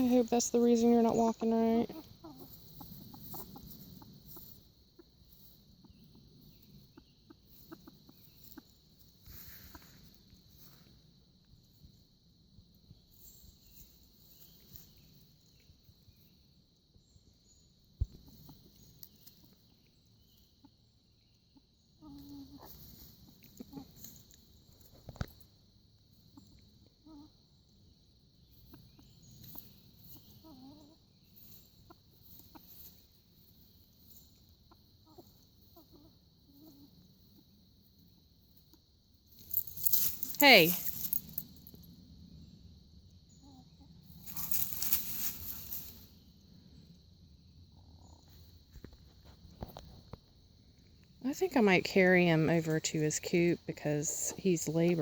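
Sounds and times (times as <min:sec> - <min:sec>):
chickens clucking: 0:00.0 - 0:10.2, 0:18.0 - 0:19.6, 0:21.5 - 0:25.1, 0:28.5 - 0:37.5
faint high background hiss: 0:00.0 - 0:26.4.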